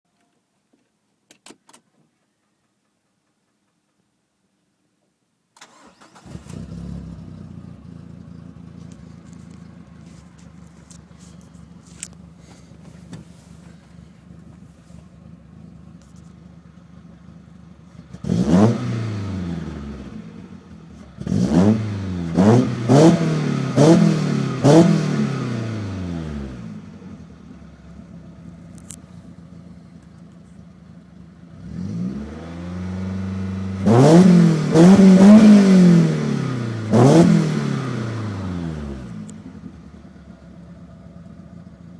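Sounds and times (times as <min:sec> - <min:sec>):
car engine idling and revving: 0:05.6 - 0:41.9
car engine starting: 0:05.6 - 0:41.9.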